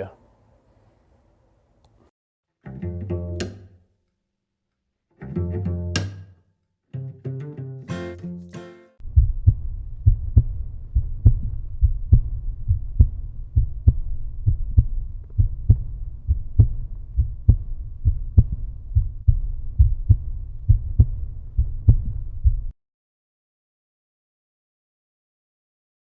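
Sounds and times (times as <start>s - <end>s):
deep bass thumps beat: 9.0s - 22.8s.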